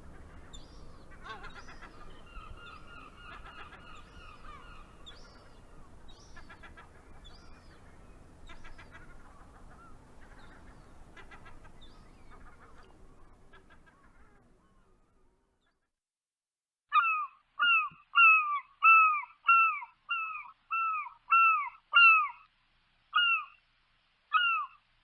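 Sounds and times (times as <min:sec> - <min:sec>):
seagulls calling: 0:00.0 - 0:14.9, 0:24.3 - 0:24.8.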